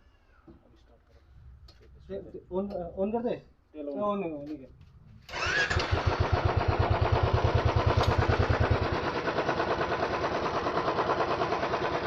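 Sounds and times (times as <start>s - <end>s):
motorcycle engine idling: 5.3s - 12.0s.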